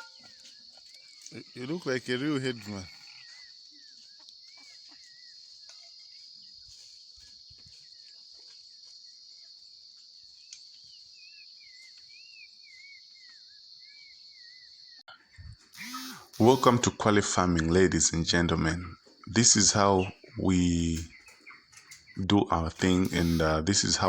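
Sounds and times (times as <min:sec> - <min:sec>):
bird chirping: 0:00.0 - 0:08.1, 0:10.4 - 0:24.0
high-pitched insect chorus: 0:00.0 - 0:24.0.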